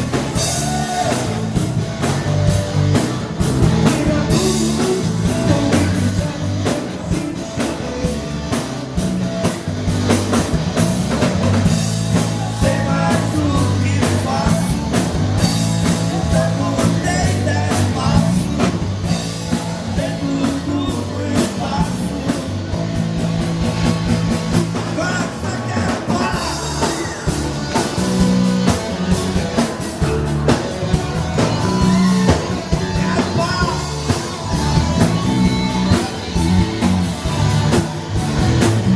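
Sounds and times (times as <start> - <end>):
bass guitar: 0.0 - 38.9
drum kit: 0.0 - 38.9
electric guitar: 0.0 - 38.9
person singing: 0.2 - 1.8, 3.6 - 8.8, 12.1 - 22.8, 24.8 - 30.2, 31.2 - 36.4.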